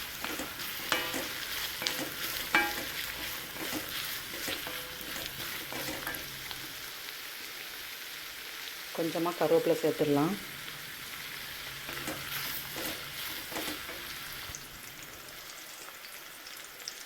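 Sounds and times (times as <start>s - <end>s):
metal spoon scraping a pan: 0.0s - 6.8s, 11.6s - 14.5s
onions sizzling in oil: 0.0s - 17.0s.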